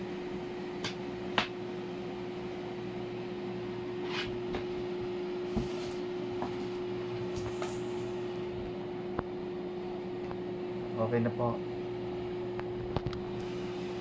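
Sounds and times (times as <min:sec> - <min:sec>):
air purifier fan whirring: 0:00.0 - 0:14.0.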